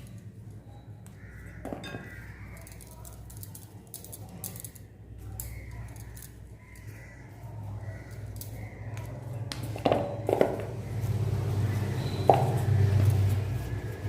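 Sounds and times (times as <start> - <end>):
hands shaping dough: 0.0 - 14.0.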